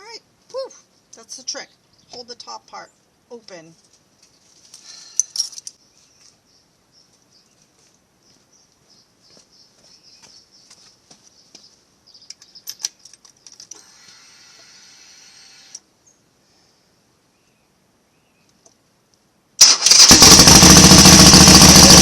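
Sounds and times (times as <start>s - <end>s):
clicks and metallic rattles: 5.2s - 5.8s, 12.3s - 13.8s.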